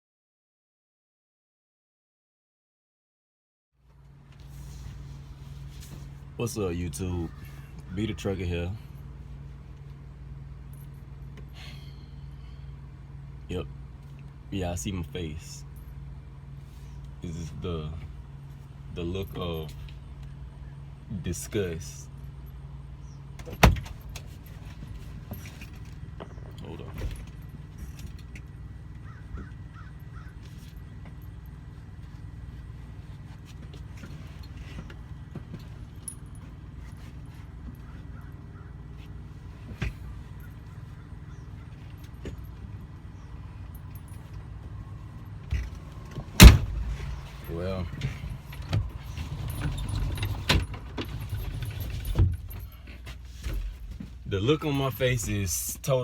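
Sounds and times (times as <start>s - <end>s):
low steady rumble: 3.8s - 56.0s
steady low hum: 3.8s - 56.0s
bird cawing: 7.2s - 8.0s, 28.9s - 30.5s, 37.8s - 38.9s
keys jangling: 26.8s - 28.6s, 46.4s - 53.2s.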